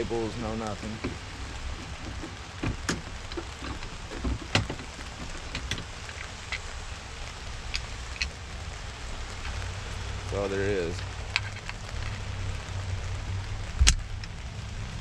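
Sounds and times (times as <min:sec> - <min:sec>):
steady background hiss: 0:00.0 - 0:15.0
light plastic clicks and knocks: 0:00.6 - 0:06.6.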